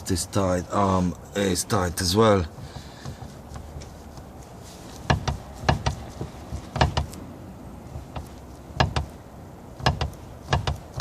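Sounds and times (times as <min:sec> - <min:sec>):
suspension arm knocking clunks: 0:01.9 - 0:07.2, 0:07.8 - 0:11.0.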